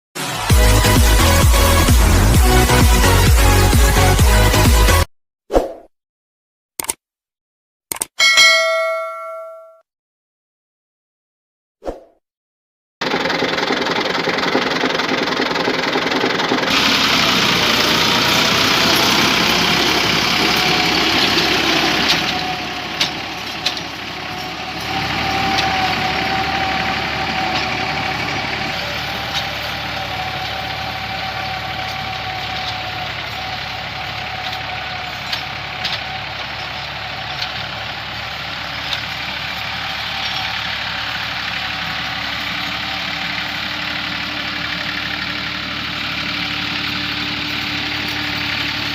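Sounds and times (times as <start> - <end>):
tractor diesel engine running: 0.2 - 5.1, 13.0 - 48.9
short clicks: 6.8 - 7.0, 7.9 - 8.2.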